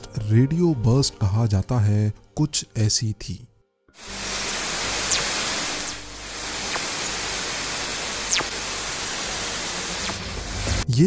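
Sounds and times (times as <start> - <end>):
static hiss: 4.0 - 11.0
quick falling whistles: 5.0 - 6.0, 8.2 - 8.6.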